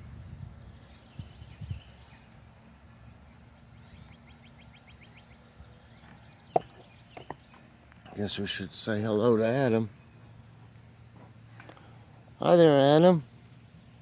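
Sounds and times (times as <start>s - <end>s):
wind rumble on microphone: 0.0s - 2.2s
small birds calling: 0.3s - 14.0s.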